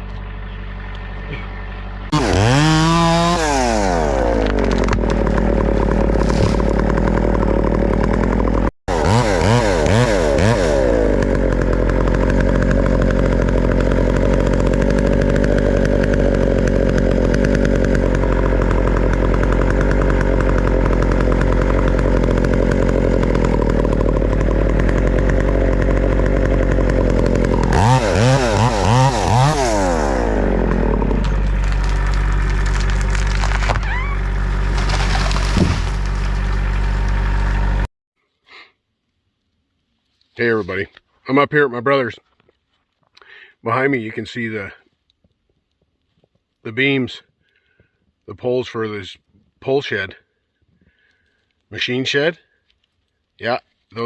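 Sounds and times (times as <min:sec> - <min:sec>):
chainsaw revving cutting wood: 0:01.0 - 0:37.9.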